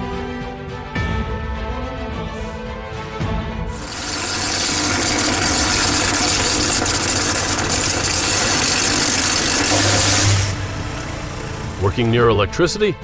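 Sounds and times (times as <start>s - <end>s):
electrical arcing crackle: 3.8s - 11.8s.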